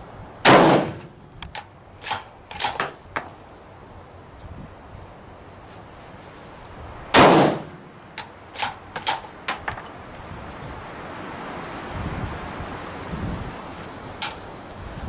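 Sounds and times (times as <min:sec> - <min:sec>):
rifle shot: 0:00.4 - 0:01.1, 0:07.2 - 0:07.8
rifle bolt clicking: 0:00.5 - 0:03.4, 0:08.2 - 0:10.0, 0:14.2 - 0:14.5.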